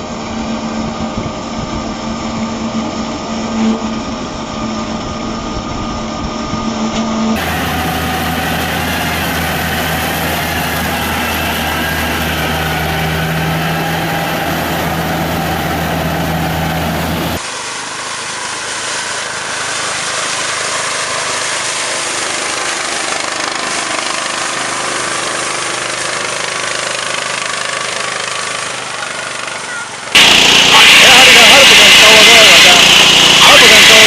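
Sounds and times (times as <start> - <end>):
engine with low steady hum: 0.0 - 21.5
farm machinery engines running: 0.0 - 34.0.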